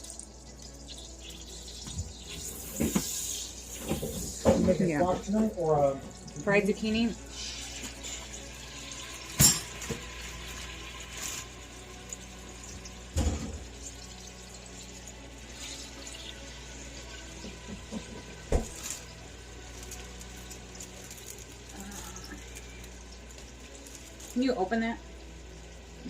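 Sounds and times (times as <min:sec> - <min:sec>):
tap running water into sink: 0:01.8 - 0:07.1, 0:12.7 - 0:13.7, 0:17.3 - 0:19.0.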